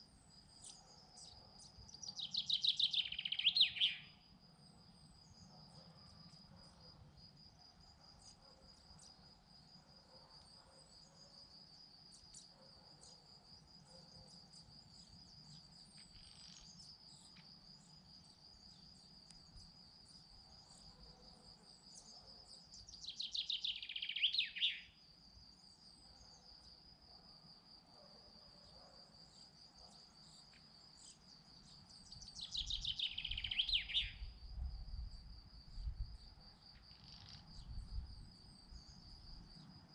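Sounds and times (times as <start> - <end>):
songbird singing: 0.0 - 4.4, 11.8 - 21.0, 21.8 - 26.8, 29.3 - 39.7
insect trilling: 36.9 - 37.4.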